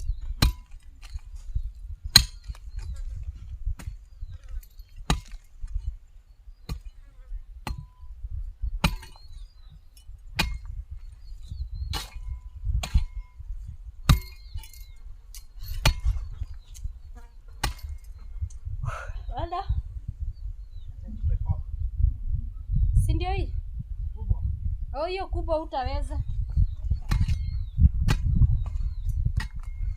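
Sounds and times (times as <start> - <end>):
metallic clink: 14.1 - 16.2
garden tool chopping soil: 17.6 - 18.0.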